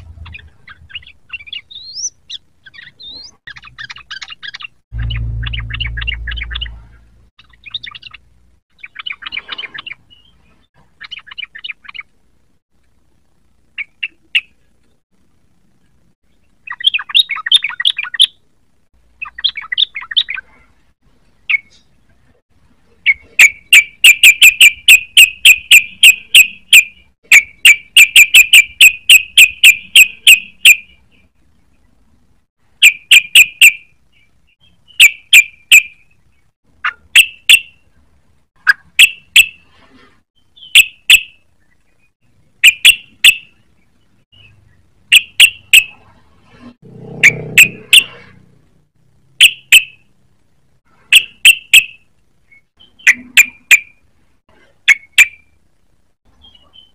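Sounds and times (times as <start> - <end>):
bulbul song: 0.0 - 12.2, 23.0 - 31.4, 32.7 - 38.0, 38.6 - 39.7, 40.4 - 46.0, 49.4 - 50.2, 51.0 - 54.1.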